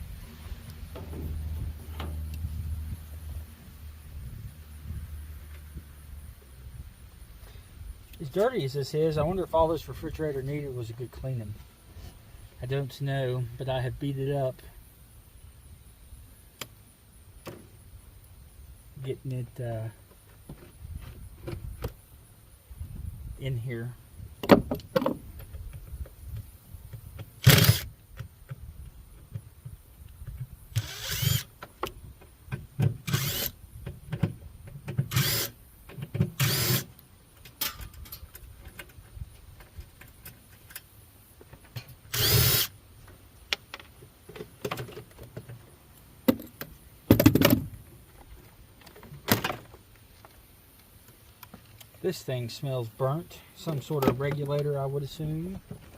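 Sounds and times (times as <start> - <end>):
power drill bursts: 27.4 - 27.9, 30.7 - 31.5, 33.0 - 33.6, 35.1 - 35.6, 36.4 - 36.9, 42.1 - 42.7.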